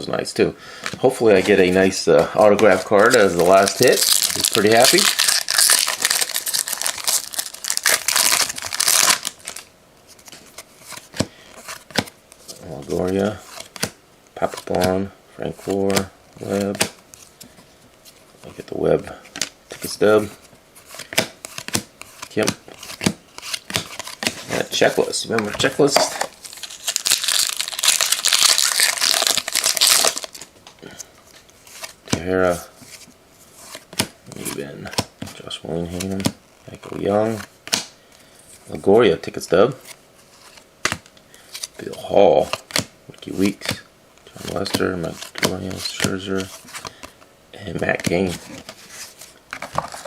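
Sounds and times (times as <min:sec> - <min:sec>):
plastic wrapper crinkling: 0:02.6 - 0:10.5, 0:23.4 - 0:30.6.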